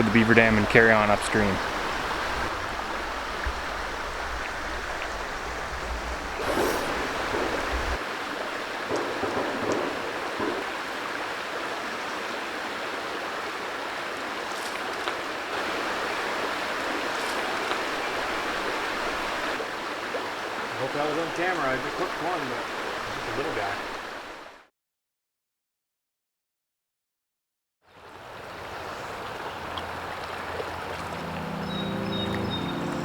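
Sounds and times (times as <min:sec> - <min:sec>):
flowing river water: 0:00.0 - 0:24.7, 0:27.9 - 0:33.0.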